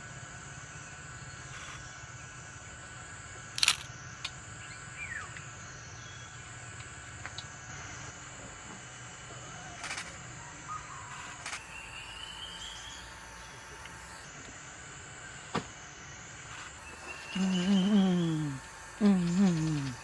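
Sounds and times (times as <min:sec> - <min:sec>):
insect drone: 0:00.0 - 0:20.0
sharp clicks: 0:03.6 - 0:04.4
loud low falling call: 0:17.2 - 0:20.0.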